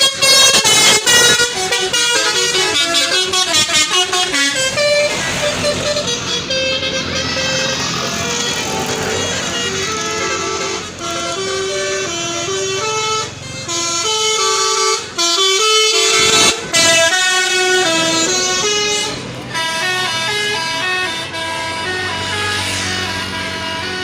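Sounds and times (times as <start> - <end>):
multi-tone air horn melody: 0.0 - 24.0.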